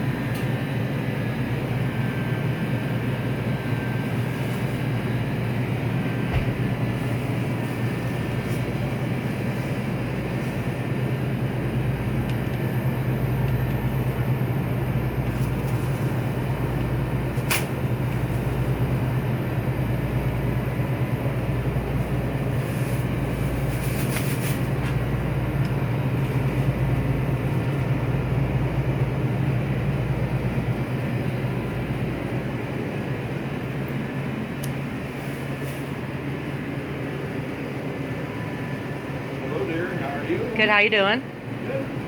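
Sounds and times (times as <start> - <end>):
low machine hum: 0.0 - 42.0.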